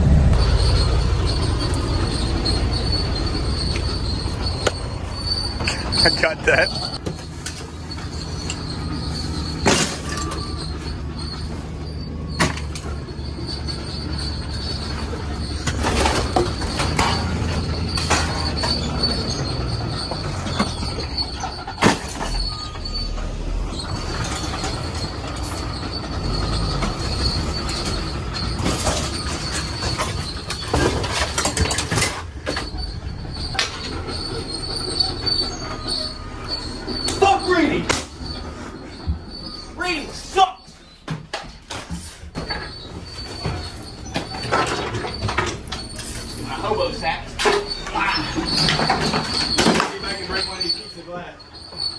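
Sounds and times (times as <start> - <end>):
high-pitched whine: 0.0 - 7.0
clunks and rattles: 0.0 - 51.9
vehicle engine droning: 0.0 - 51.9.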